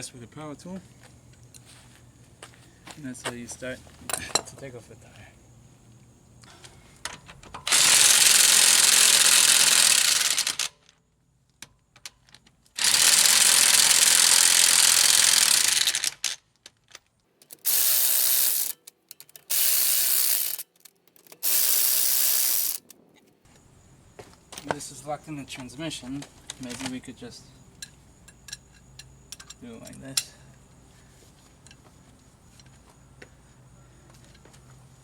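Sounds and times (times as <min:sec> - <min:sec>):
impact wrench hammering: 0:17.7 - 0:18.8.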